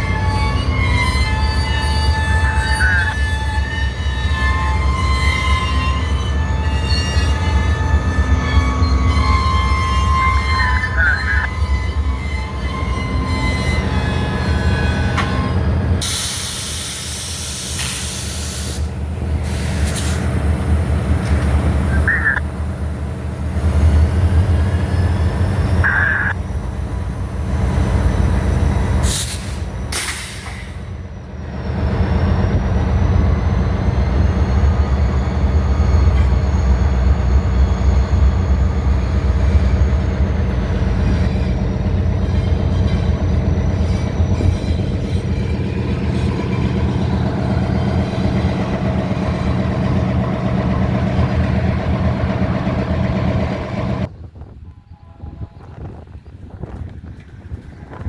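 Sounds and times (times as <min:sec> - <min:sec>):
diesel locomotive engine drone: 0:00.0 - 0:58.0
short high squeaks: 0:06.9 - 0:11.5.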